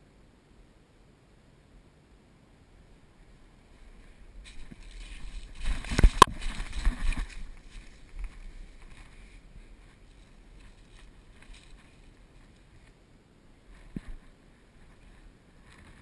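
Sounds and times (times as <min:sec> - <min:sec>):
rustling scuffing movement: 0:03.7 - 0:13.0, 0:13.6 - 0:16.0.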